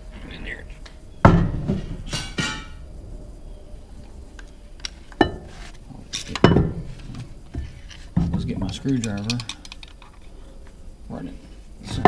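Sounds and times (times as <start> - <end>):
sharp metallic clanks: 1.2 - 2.8.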